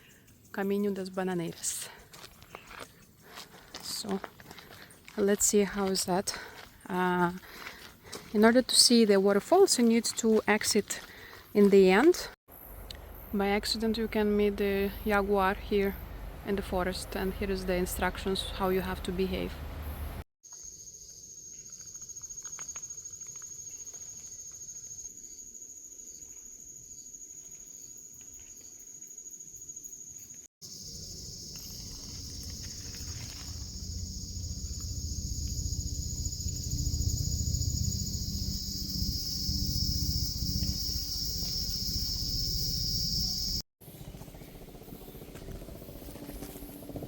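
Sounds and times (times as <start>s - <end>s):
insects shrilling: 30.7s - 43.6s
low rumble: 32.2s - 41.8s.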